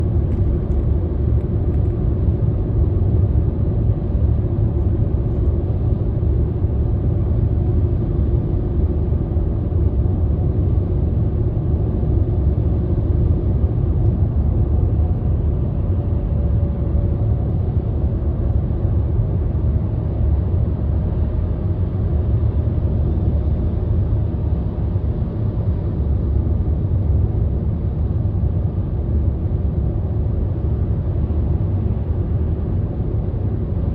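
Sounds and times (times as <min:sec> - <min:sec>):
car engine and road noise: 0:00.0 - 0:33.9.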